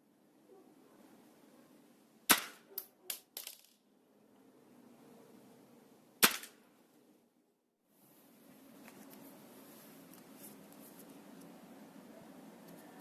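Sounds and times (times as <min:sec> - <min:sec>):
airsoft rifle shots: 0:02.3 - 0:03.2, 0:06.2 - 0:06.6.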